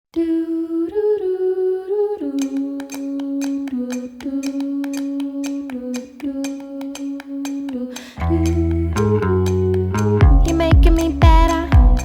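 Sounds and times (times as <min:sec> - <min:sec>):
clicking beat: 0:02.4 - 0:12.0
humming voice: 0:08.2 - 0:12.0.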